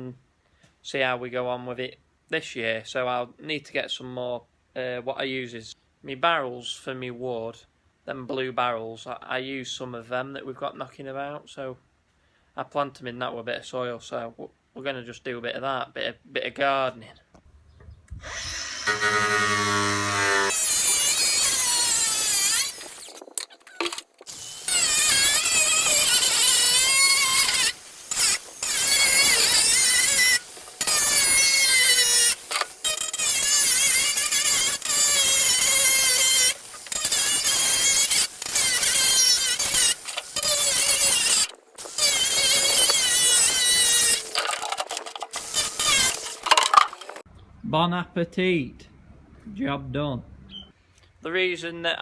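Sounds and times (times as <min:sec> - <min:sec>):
power saw cutting plastic: 0:18.2 - 0:47.2.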